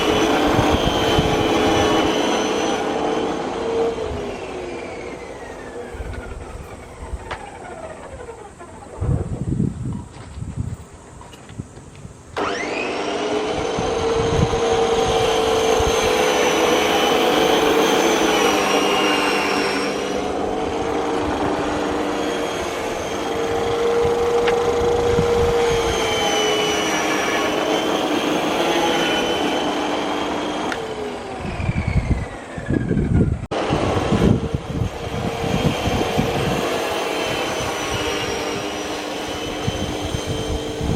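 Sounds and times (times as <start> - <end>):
reel mower motor whining: 0.0 - 40.9.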